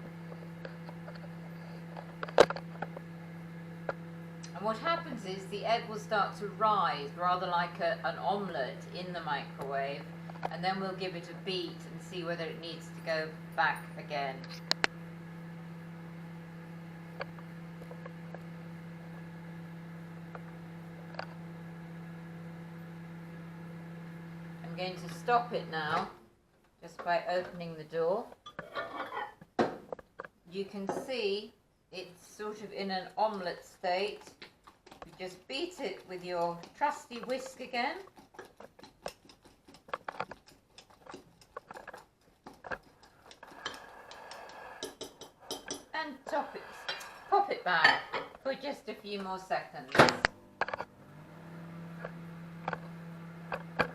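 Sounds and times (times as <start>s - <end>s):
microwave oven humming: 0.0s - 26.4s, 49.6s - 53.9s
whisk tapping and scraping jug: 32.9s - 48.4s.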